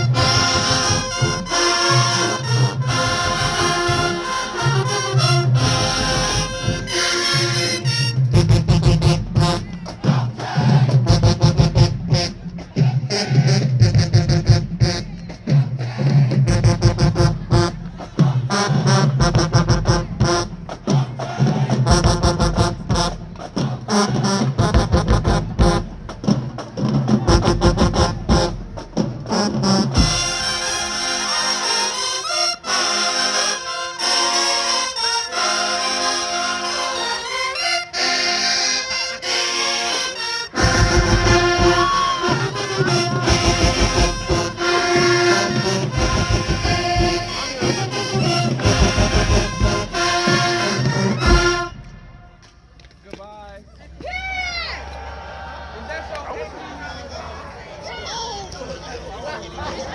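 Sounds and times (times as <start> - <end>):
held brass chords: 0.0 - 52.9
marching band playing: 0.0 - 53.6
drum strikes: 8.2 - 31.0, 40.6 - 52.7.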